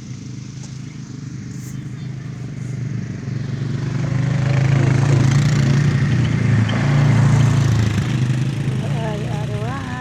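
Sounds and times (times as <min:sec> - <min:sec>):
off-road vehicle engine running: 0:00.0 - 0:10.0.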